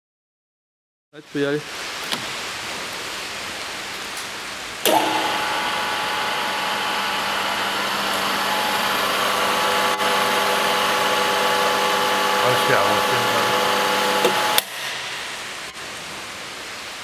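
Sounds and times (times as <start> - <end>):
drill gear whine: 4.9 - 14.6
drill machine hiss: 4.9 - 16.0.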